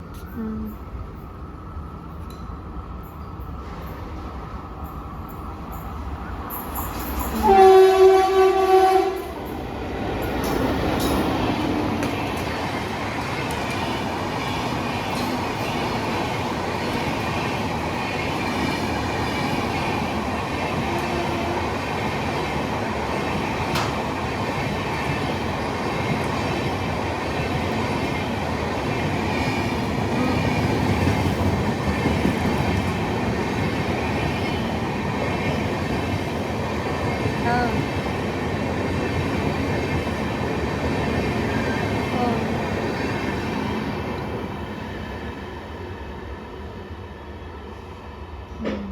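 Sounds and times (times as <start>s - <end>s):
train wheels rumbling on rails: 0.0s - 48.9s
locomotive horn blast: 7.4s - 9.3s.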